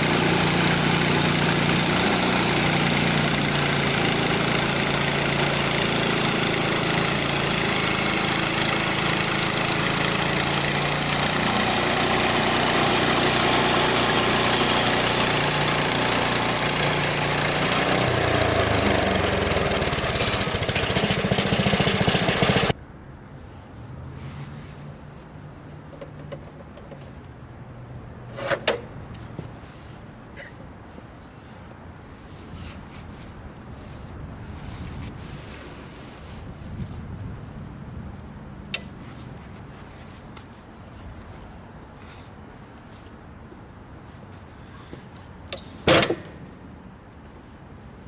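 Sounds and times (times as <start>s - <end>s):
small gas engine running: 0.0s - 22.8s.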